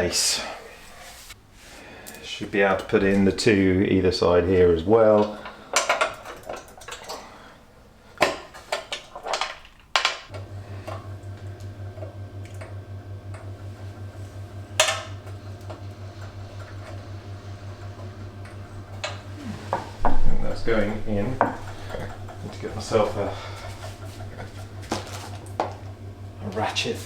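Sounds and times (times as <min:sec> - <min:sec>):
low pulsing hum: 0:10.3 - 0:27.0.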